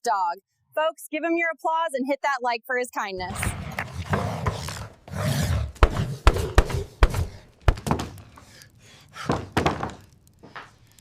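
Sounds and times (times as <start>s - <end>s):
hard thuds on a door: 5.8s - 8.1s.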